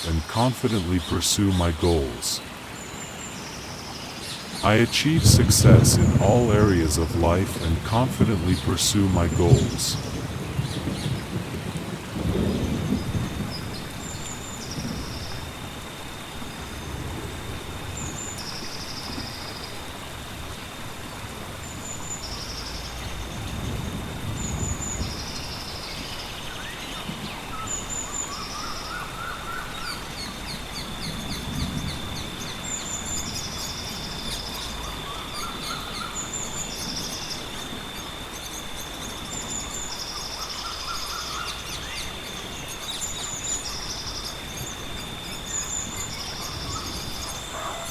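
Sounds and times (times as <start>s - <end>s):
rain hissing: 0.0s - 47.9s
high insect drone: 1.9s - 47.9s
distant thunder rumbling: 4.8s - 15.3s.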